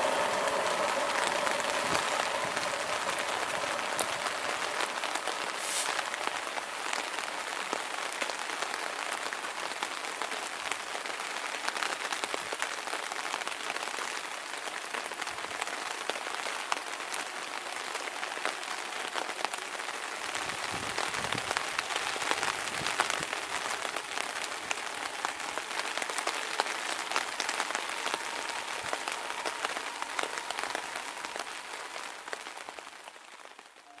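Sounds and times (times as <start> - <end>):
steady rain falling: 0.0 - 34.0.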